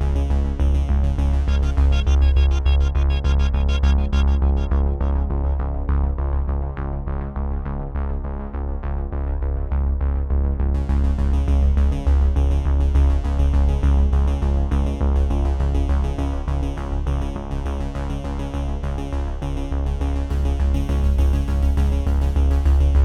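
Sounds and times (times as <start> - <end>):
electronic synthesizer music: 1.2 - 5.9.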